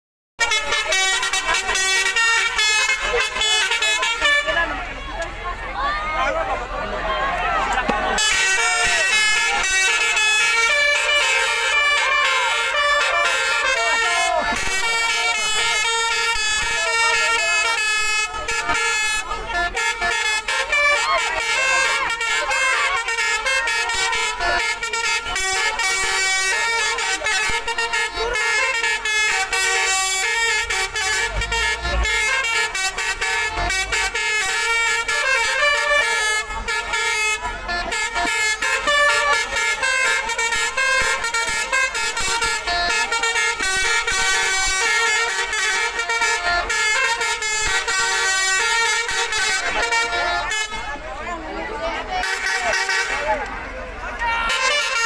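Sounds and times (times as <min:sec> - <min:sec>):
bus horn playing melody: 0:00.4 - 0:55.0.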